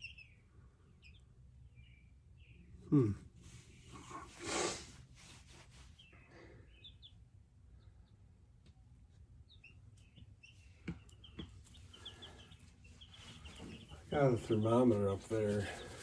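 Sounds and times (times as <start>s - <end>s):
chicks peeping: 0.0s - 2.6s, 5.8s - 16.0s.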